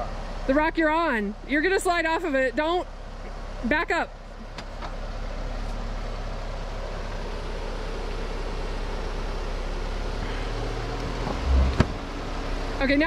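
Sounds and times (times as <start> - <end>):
vehicle engine low hum: 0.0 - 13.0
heavy low thump: 11.1 - 12.1.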